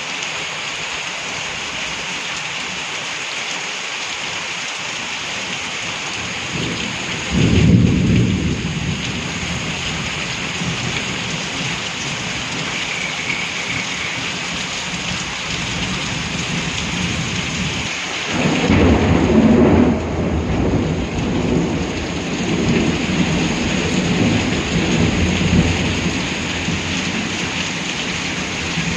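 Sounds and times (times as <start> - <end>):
heavy rain: 0.0 - 28.9
rolling thunder: 6.5 - 14.2, 15.6 - 28.9.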